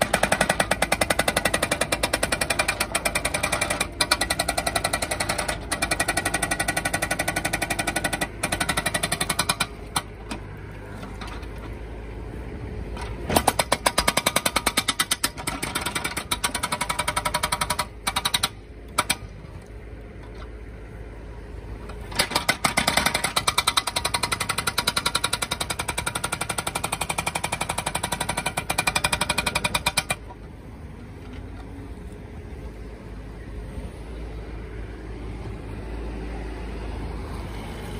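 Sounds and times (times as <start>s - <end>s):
diesel engine running: 0.0s - 37.9s
hydraulic breaker hammering: 22.0s - 30.3s.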